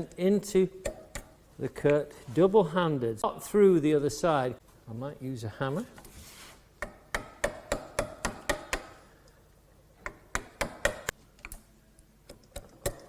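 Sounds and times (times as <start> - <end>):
hammer tapping a chisel: 6.8 - 9.0, 10.0 - 11.1, 12.3 - 13.0.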